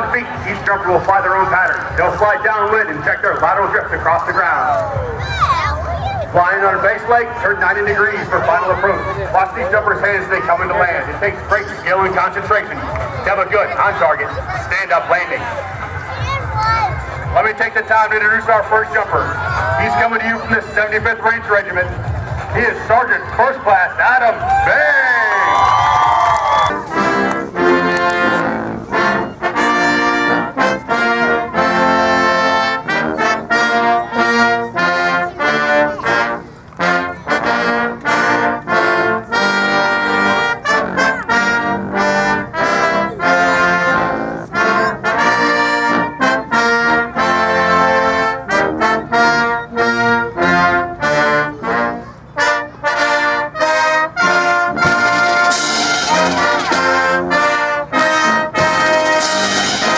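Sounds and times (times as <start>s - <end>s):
brass band playing: 17.2s - 59.9s.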